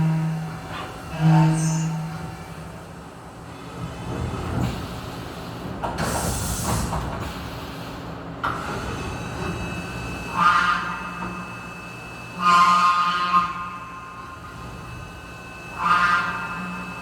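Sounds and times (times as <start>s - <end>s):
machining center humming: 8.2s - 17.0s.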